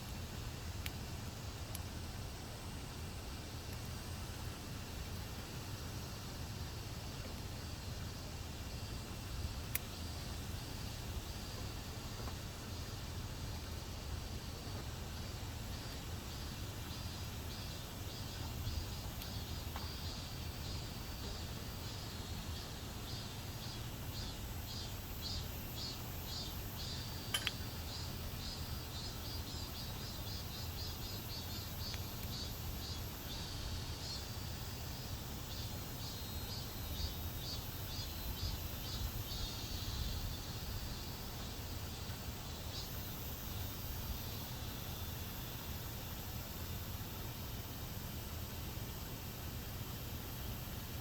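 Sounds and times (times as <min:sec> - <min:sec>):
insects chirping: 0:00.0 - 0:51.0
sharp click: 0:27.3 - 0:27.6.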